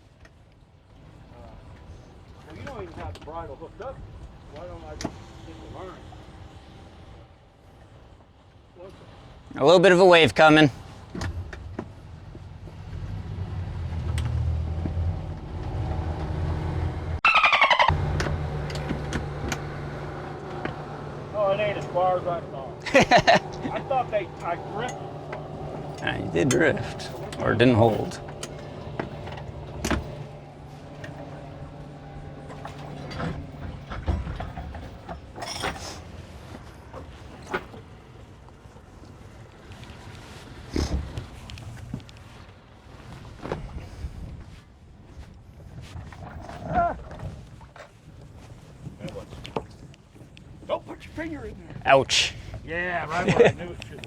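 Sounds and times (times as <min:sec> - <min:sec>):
boat engine low rumble: 0:00.0 - 0:54.0
higher whine: 0:15.2 - 0:35.2
gear knocking and clinking: 0:22.9 - 0:36.0.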